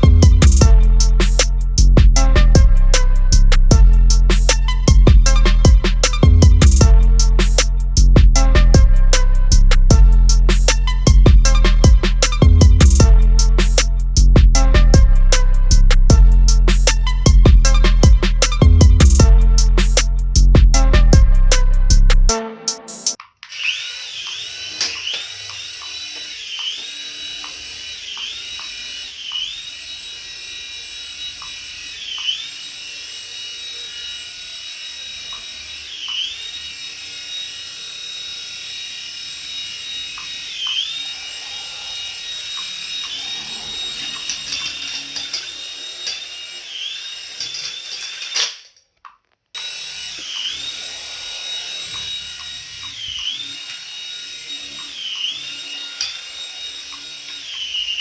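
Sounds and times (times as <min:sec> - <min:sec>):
toy electric motor whining: 0:00.0 - 0:22.3, 0:23.1 - 0:48.8, 0:49.6 - 0:58.0.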